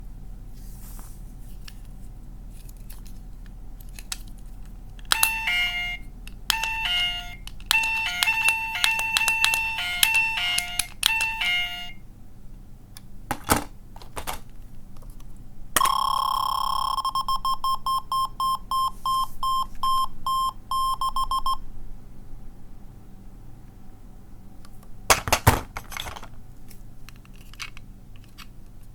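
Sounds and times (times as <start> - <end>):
toy clicks: 5.0 - 12.0
long steady electronic tone: 5.1 - 12.0, 15.8 - 21.6
tinny electronic beeps: 5.1 - 12.0.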